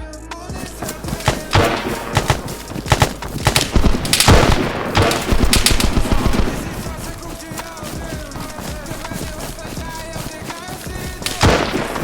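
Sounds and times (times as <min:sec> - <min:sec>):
sharp bangs and knocks: 0:00.6 - 0:12.0.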